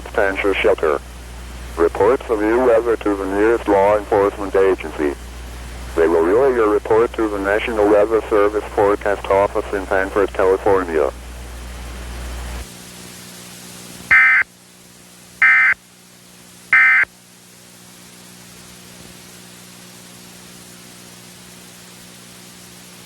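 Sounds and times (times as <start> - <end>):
low hum and hiss: 0.0 - 23.0
digital data tone bursts: 14.1 - 14.4, 15.4 - 15.8, 16.7 - 17.1.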